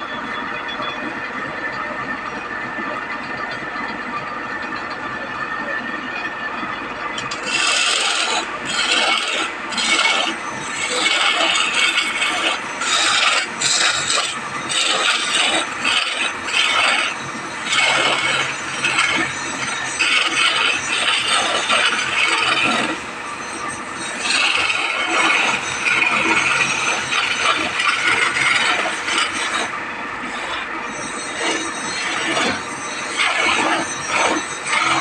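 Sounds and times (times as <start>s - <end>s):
abrasive tool scraping wood: 7.3s - 23.1s.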